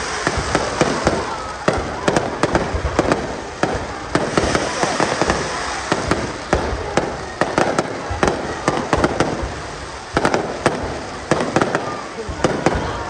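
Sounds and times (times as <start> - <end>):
fireworks bangs and crackles: 0.0 - 13.0
rumble of fireworks bursts: 0.0 - 13.0.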